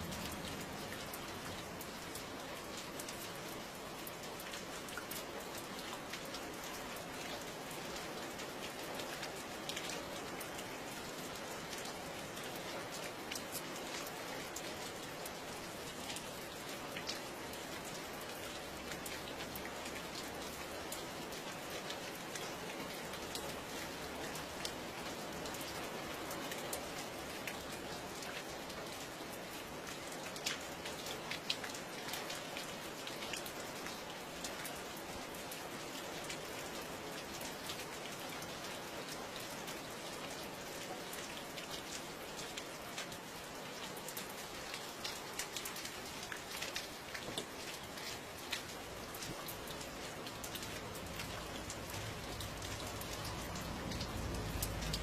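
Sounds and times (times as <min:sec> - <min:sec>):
rain falling: 0:00.0 - 0:55.0.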